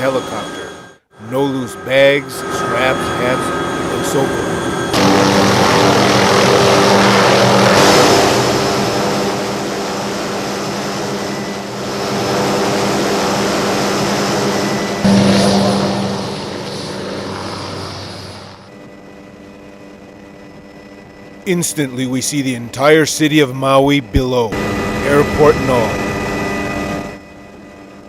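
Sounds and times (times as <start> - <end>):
helicopter turbine and rotor: 0.0 - 28.0
rushing air: 13.2 - 18.6.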